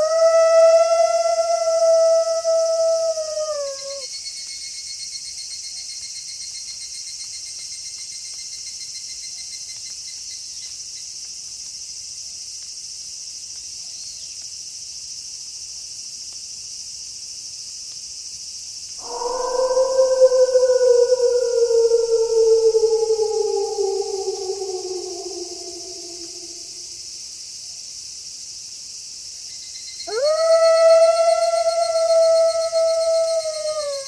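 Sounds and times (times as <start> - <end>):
wolf howling: 0.0 - 4.1, 19.0 - 27.0, 30.1 - 34.0
insects chirping at night: 0.0 - 11.1, 19.0 - 27.4, 28.3 - 34.0
cricket-like trill: 19.0 - 27.1, 29.5 - 34.0.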